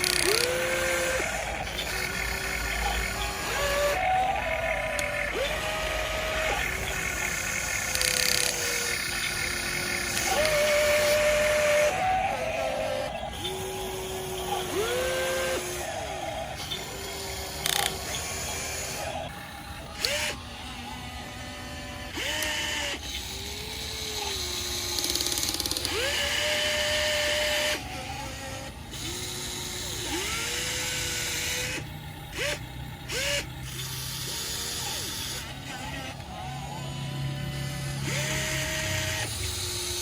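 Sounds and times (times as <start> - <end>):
small electric motors whining: 0.0 - 40.0.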